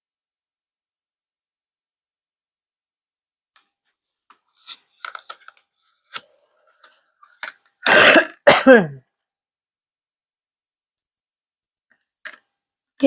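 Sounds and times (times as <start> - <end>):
woman coughing: 7.8 - 9.0.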